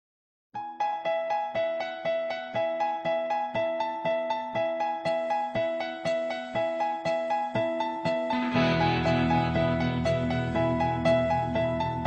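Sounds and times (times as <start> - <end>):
background music of pitched notes: 8.3 - 12.0.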